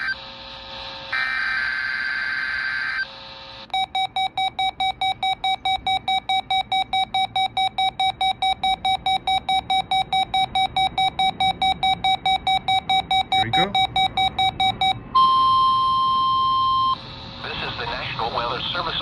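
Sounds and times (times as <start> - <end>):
buzzy digital data squawk: 0.0 - 0.3, 1.1 - 3.2
alert receiver beeping rapidly: 3.8 - 15.7.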